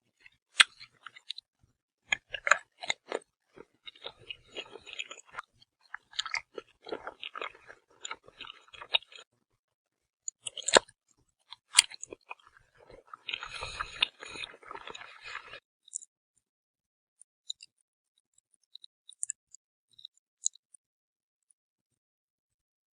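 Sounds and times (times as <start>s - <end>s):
crunchy biting and chewing: 0.2s - 1.4s, 2.1s - 9.3s, 10.4s - 10.9s, 11.5s - 16.0s.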